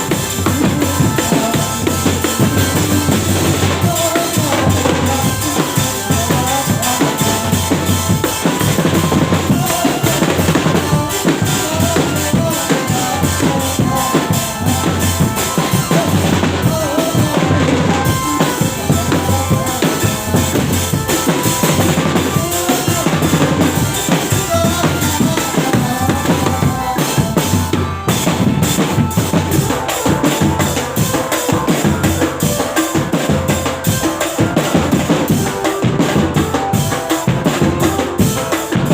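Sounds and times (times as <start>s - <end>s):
loud music with drum beat: 0.0s - 38.9s.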